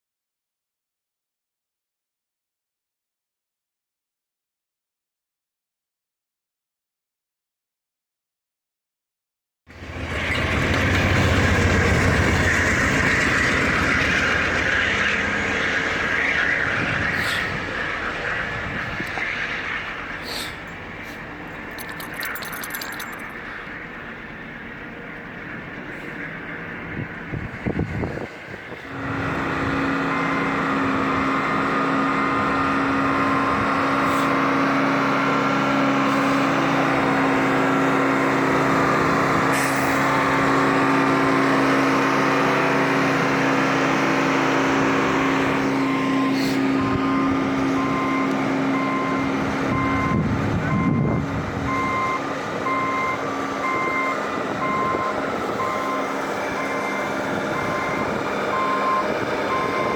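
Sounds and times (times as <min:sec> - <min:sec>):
heavy diesel vehicle running: 0:09.7 - 0:59.9
reversing alarm beeping: 0:45.7 - 0:59.9.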